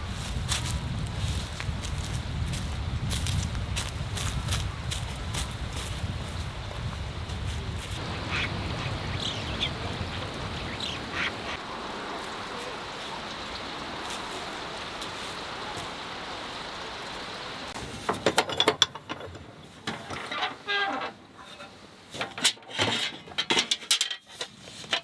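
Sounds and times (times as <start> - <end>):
steady outdoor hiss: 0.0 - 25.0
high bird calls: 7.6 - 14.8.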